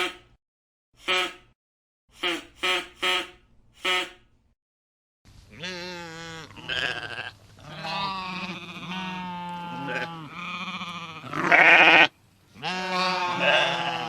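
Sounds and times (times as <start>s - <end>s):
short sharp animal calls: 0.0s - 0.4s, 2.2s - 4.2s
sheep or goats bleating: 5.5s - 14.0s.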